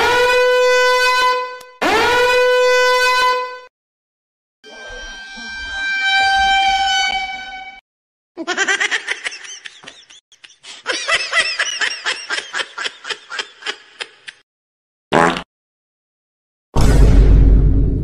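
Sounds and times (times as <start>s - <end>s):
cartoonish laugh: 8.4s - 14.4s
distorted bass-heavy blast: 16.8s - 18.0s.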